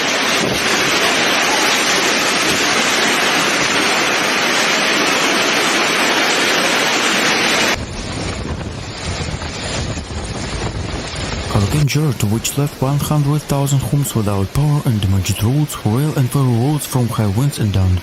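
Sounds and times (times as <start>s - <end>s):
rushing wind and water: 0.0s - 18.0s.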